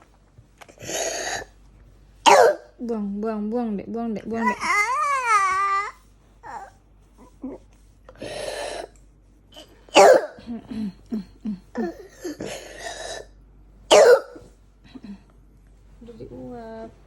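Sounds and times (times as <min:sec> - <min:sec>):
child coughing harshly: 0:02.3 - 0:02.6, 0:09.9 - 0:10.4, 0:11.8 - 0:13.3, 0:13.9 - 0:14.4.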